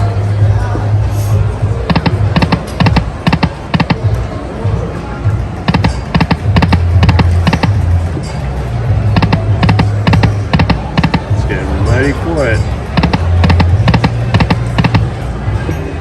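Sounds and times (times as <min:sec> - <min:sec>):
casino hum: 0:01.3 - 0:16.0
slot machine clicks: 0:01.9 - 0:04.0, 0:05.6 - 0:07.8, 0:09.1 - 0:15.2
slot machine music: 0:05.6 - 0:07.9, 0:09.1 - 0:15.2.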